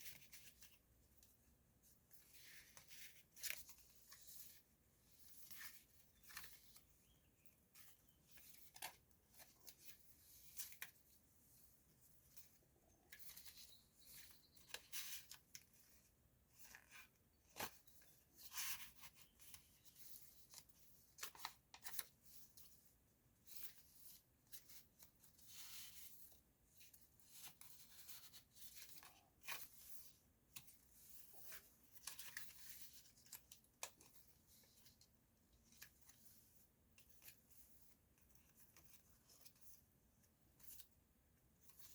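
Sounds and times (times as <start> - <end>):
paper pages turning: 2.1 - 6.9, 7.7 - 11.0, 12.3 - 22.8.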